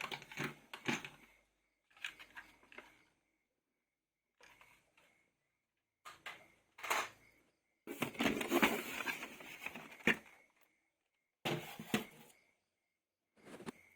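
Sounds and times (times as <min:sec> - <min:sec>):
plastic rustling and clattering: 0:00.0 - 0:01.3, 0:07.9 - 0:10.4, 0:11.5 - 0:12.4.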